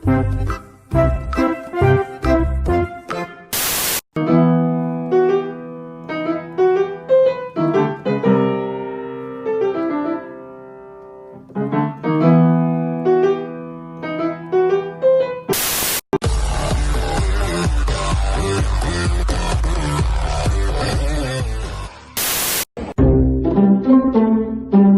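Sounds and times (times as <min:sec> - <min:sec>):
piano music: 0:00.0 - 0:03.5, 0:04.2 - 0:15.6, 0:23.0 - 0:24.9.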